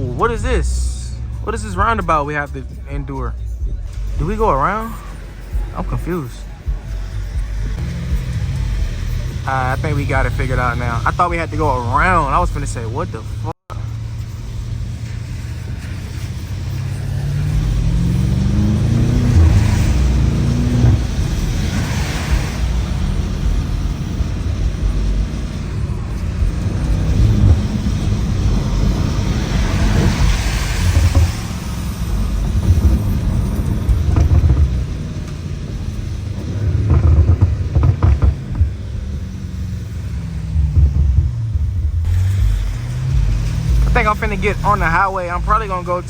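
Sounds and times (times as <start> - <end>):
car engine accelerating hard: 0.0 - 46.0
tyre hiss on wet road: 13.8 - 40.7
heavy rain: 13.8 - 46.0.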